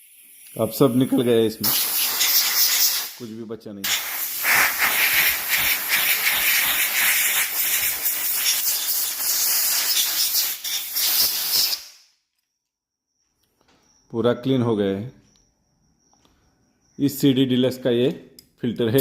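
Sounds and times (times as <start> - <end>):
air blow gun hissing: 0.0 - 3.2, 3.8 - 12.0.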